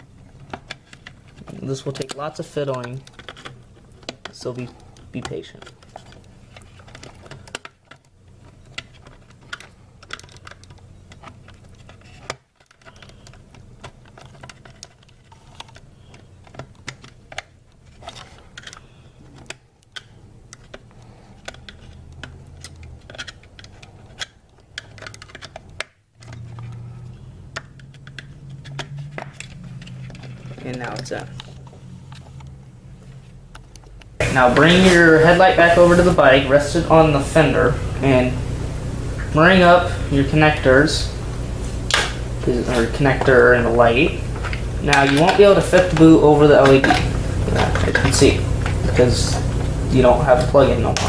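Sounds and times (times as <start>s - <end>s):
metal and plastic clicks and scrapes: 0.2s - 34.2s
low hum: 26.2s - 51.0s.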